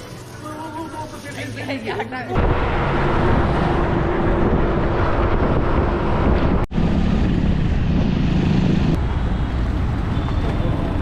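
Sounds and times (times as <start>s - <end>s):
road noise: 2.3s - 11.0s
wind on microphone: 2.4s - 9.0s
vehicle engine: 2.4s - 11.0s.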